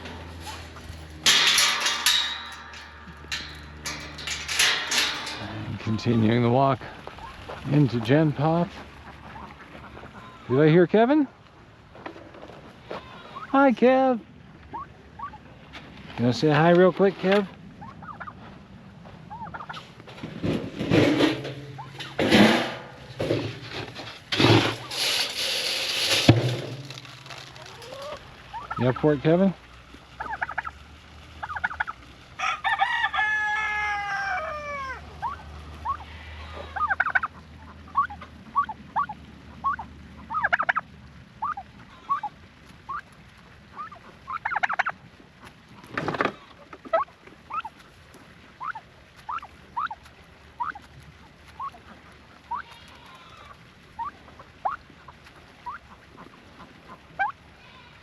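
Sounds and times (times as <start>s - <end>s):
rustle: 0.0s - 58.0s
chicken drawn-out call: 31.4s - 40.8s.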